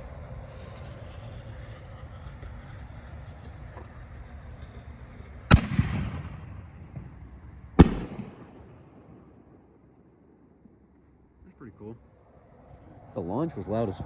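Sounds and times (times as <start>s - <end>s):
firework mortar launch bang: 5.5s - 9.4s.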